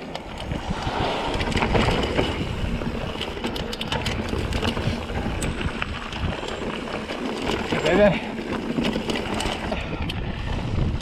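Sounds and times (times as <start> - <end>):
bike rattling over rocks: 0.0 - 11.0
wind on microphone: 0.2 - 7.0, 9.5 - 11.0.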